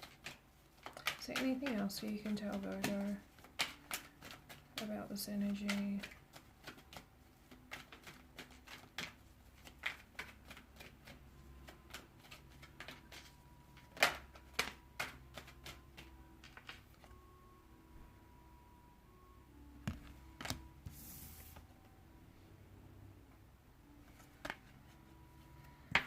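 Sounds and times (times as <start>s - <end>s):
cards shuffling: 0.0s - 17.2s, 19.8s - 21.8s, 24.1s - 25.1s.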